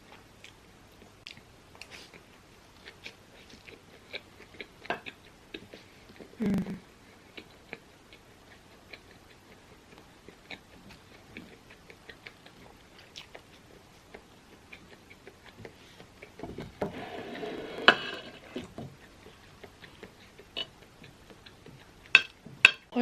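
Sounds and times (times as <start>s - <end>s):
chewing mouth clicks: 7.3s - 16.4s.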